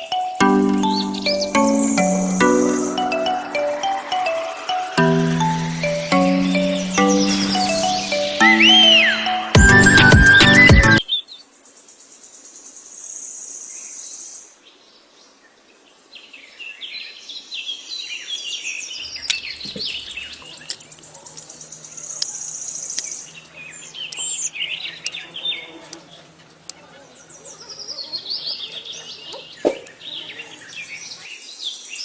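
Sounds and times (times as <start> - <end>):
bird chirps: 0.0 - 10.9, 19.0 - 31.3
music: 0.0 - 11.0
insect buzzing: 0.9 - 9.2, 19.0 - 31.3.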